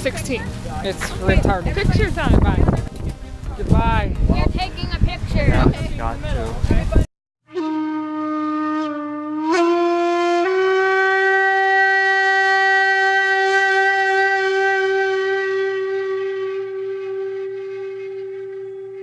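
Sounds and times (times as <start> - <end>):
wind instrument holding a note: 7.5 - 19.0.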